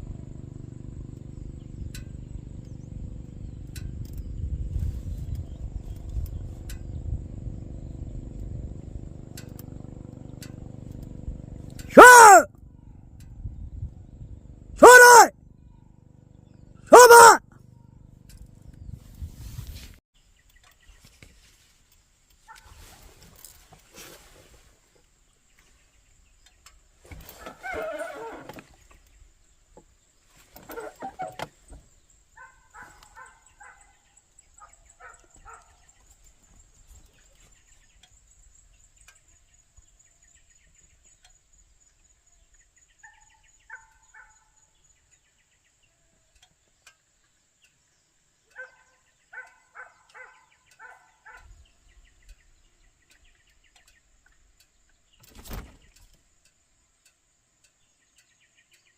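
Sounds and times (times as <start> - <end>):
faint animal calls: 12.0 - 12.5, 14.8 - 15.3, 16.9 - 17.4.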